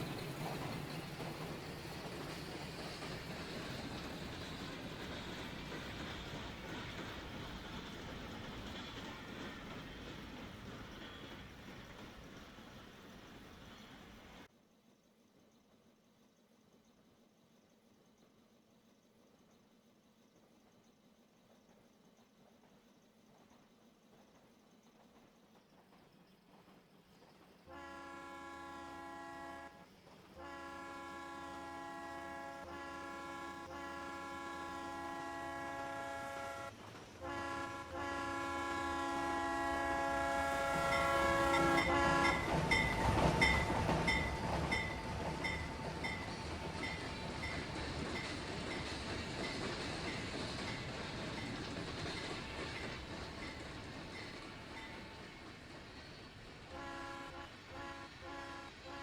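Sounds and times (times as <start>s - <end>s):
steam train wheels passing: 0.0s - 14.5s, 22.4s - 59.0s
steam whistle blasts: 27.7s - 29.8s, 30.4s - 46.0s, 56.7s - 59.0s.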